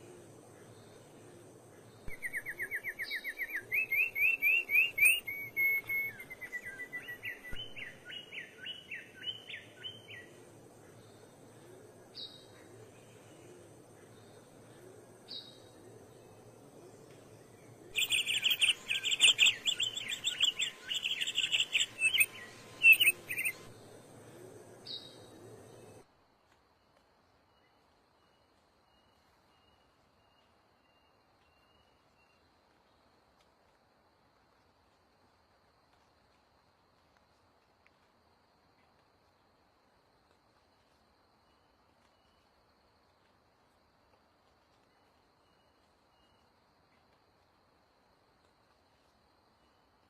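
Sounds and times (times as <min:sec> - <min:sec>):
songbird trilled song: 0:02.1 - 0:10.2, 0:18.0 - 0:23.6.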